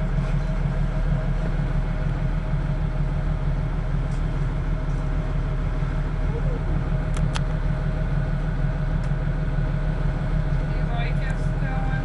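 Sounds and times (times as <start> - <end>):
motorboat engine droning: 0.0 - 12.0.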